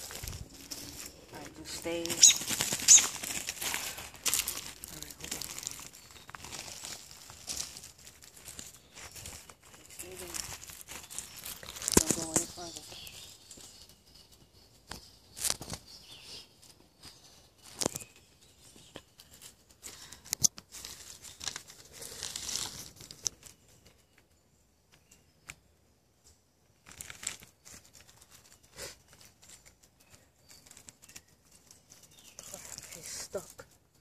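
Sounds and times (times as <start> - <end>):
bird wings flapping and rustling: 0.0 - 6.8.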